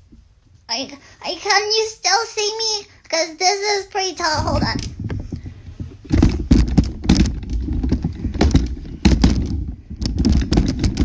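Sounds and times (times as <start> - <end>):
handling knocks and thumps: 4.4 - 11.0.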